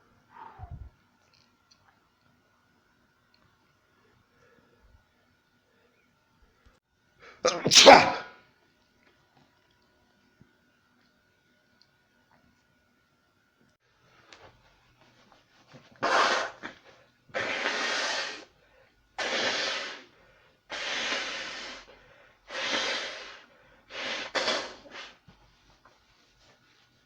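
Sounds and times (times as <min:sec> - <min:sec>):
person sneezing: 0:07.4 - 0:08.4, 0:16.0 - 0:16.8, 0:17.4 - 0:18.5, 0:19.2 - 0:20.1, 0:22.5 - 0:25.2.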